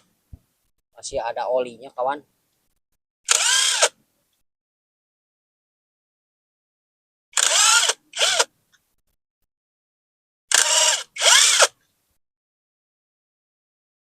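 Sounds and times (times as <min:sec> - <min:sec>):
power drill whining and ratcheting: 0:03.3 - 0:04.0, 0:07.4 - 0:08.5, 0:10.5 - 0:11.8.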